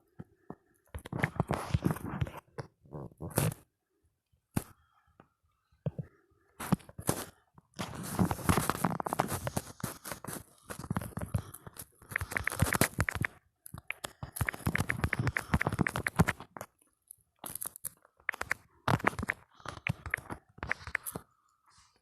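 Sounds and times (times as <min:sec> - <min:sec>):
smartphone keyboard clicking: 0:12.0 - 0:16.4, 0:18.2 - 0:21.2.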